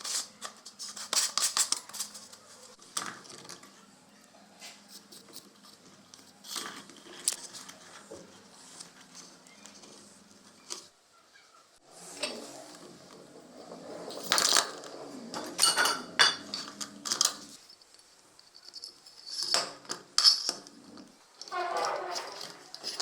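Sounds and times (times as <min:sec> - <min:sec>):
rubbing or scraping: 0:11.8 - 0:17.6, 0:20.7 - 0:23.0
hard parts clinking and knocking: 0:12.8 - 0:23.0.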